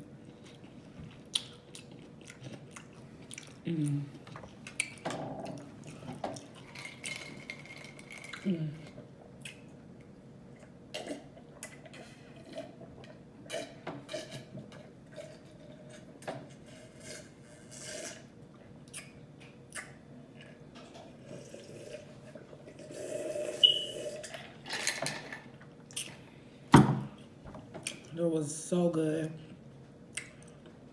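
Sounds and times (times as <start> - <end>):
person chewing food: 0.2 - 8.4.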